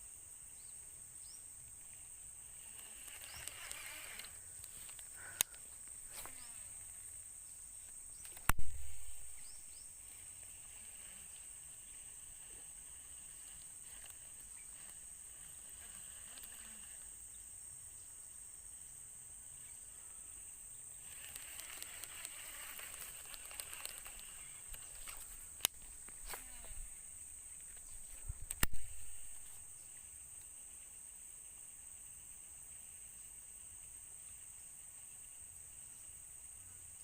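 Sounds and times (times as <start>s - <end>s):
insects droning: 0.0s - 37.0s
rustling with small clicks: 1.9s - 7.0s, 7.8s - 8.6s, 10.1s - 17.2s, 21.0s - 26.8s, 27.5s - 29.6s.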